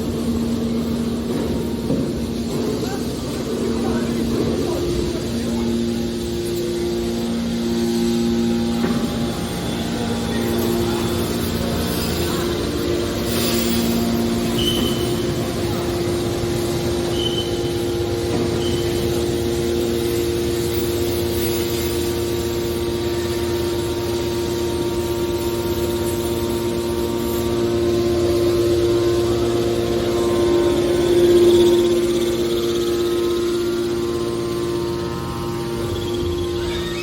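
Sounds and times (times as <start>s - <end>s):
hydraulic power unit humming: 0.0s - 37.0s
high squeaks: 13.2s - 19.9s, 34.4s - 37.0s.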